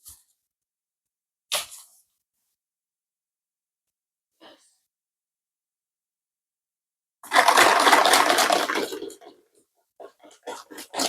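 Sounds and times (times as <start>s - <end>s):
sieve rustling with flour: 7.2s - 9.0s.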